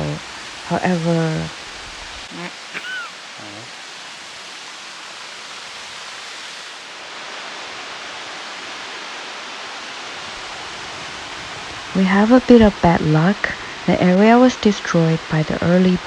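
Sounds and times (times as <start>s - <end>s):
waterfall rushing: 0.0s - 11.9s.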